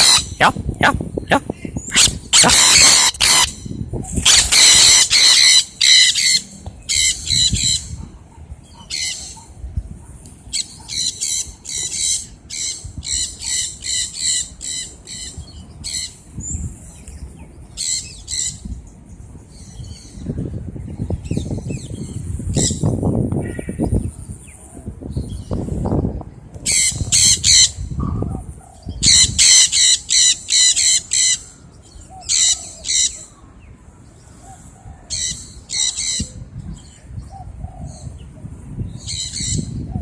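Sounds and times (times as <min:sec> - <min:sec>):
parrots screeching: 0:00.0 - 0:00.3, 0:02.0 - 0:03.6, 0:04.2 - 0:07.9, 0:29.0 - 0:31.5.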